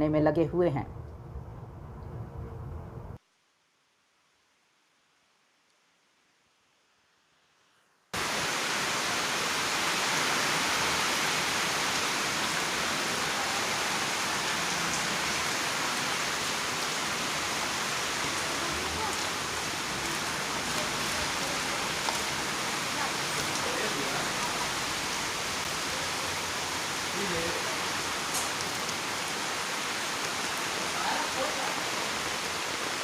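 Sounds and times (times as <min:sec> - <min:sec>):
heavy rain falling: 0:08.2 - 0:33.0.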